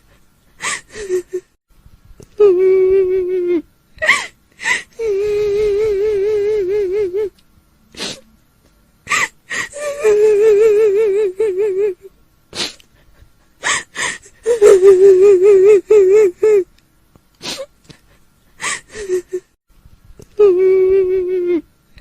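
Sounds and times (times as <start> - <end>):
woman wailing: 9.1 - 12.0
sharp gasping breaths: 12.6 - 14.5, 17.4 - 19.3.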